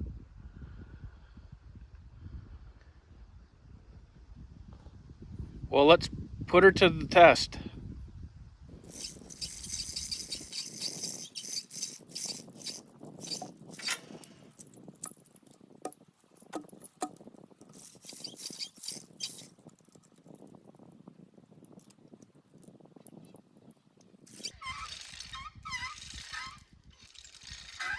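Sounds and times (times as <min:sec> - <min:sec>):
ratchet clicking: 0:08.8 - 0:15.6, 0:16.5 - 0:19.6, 0:24.3 - 0:25.4
hoist chain rattling: 0:08.8 - 0:20.6, 0:24.3 - 0:27.9.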